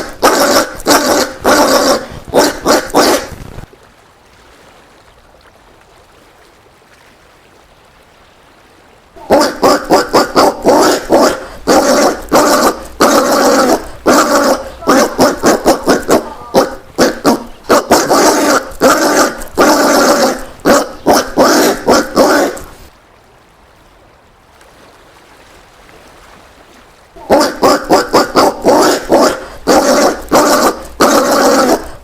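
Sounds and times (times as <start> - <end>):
peccary harsh calls: 0.0 - 3.4, 9.2 - 22.9, 27.2 - 32.0.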